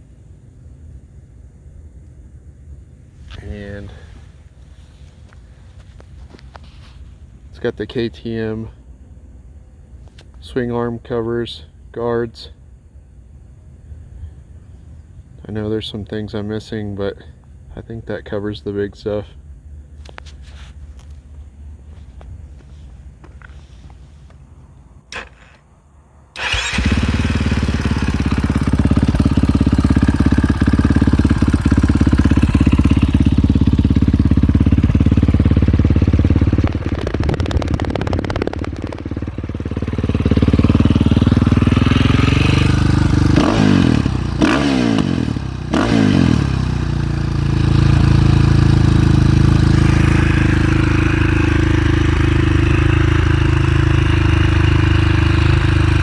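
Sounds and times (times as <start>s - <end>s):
motorcycle engine idling: 19.4s - 56.0s.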